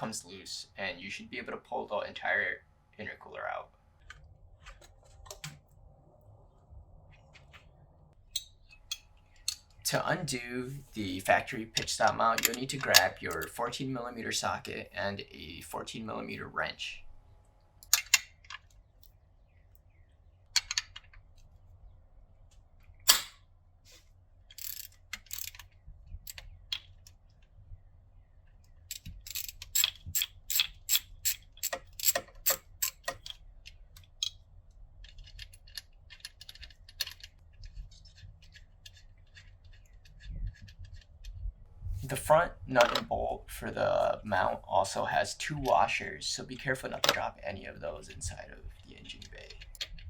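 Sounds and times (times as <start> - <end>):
socket ratchet clicking: 24.5 - 25.7, 28.9 - 33.4.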